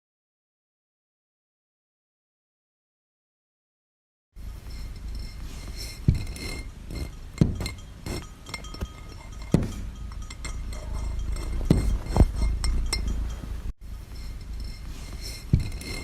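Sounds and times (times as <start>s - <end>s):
clinks and knocks with ringing: 4.4s - 16.0s
steady low rumble: 4.4s - 16.0s.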